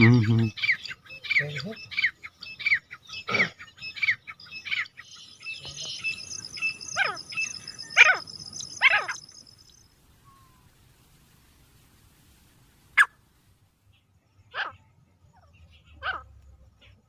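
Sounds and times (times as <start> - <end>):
bird calling shrill notes: 0.0 - 10.7
thin high tone: 5.1 - 10.5.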